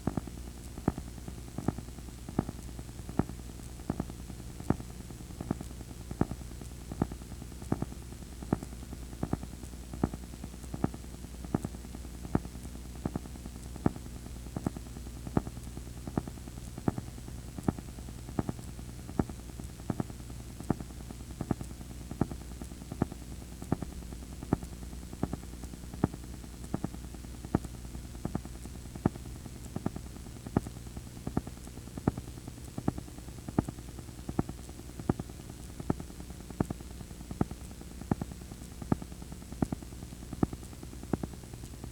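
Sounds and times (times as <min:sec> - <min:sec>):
tape static hiss: 0:00.0 - 0:41.9.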